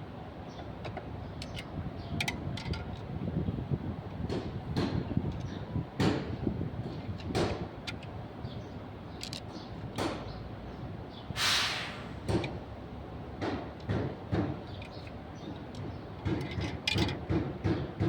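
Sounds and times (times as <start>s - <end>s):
knocks and clanks on vehicle: 4.2s - 8.0s, 9.6s - 10.4s, 12.2s - 12.6s, 13.3s - 18.0s.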